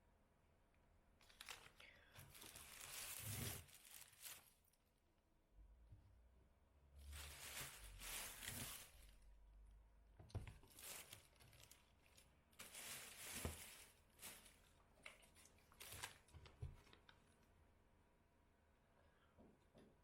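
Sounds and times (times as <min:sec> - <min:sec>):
rustling swishes: 0:07.1 - 0:09.2.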